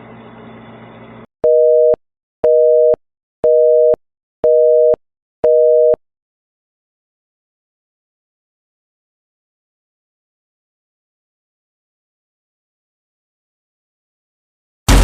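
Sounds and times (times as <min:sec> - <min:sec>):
telephone busy signal beeps: 0:01.4 - 0:06.0.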